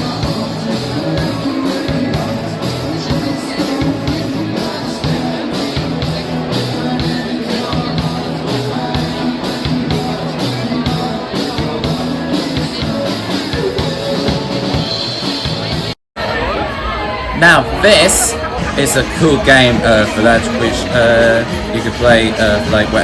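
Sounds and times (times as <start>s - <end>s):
person singing: 0.0s - 14.7s, 17.4s - 23.0s
guitar: 0.0s - 23.0s
drum kit steady beat: 17.4s - 23.0s.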